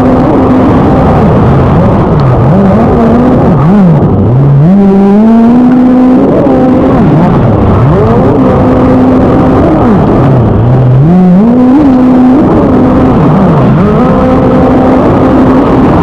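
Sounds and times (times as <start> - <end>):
engine revving: 0.0 - 16.0.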